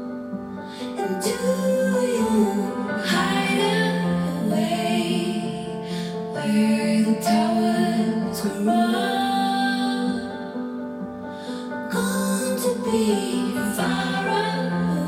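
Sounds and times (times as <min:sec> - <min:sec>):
woman singing slow soft song: 0:00.7 - 0:10.8, 0:11.5 - 0:15.0.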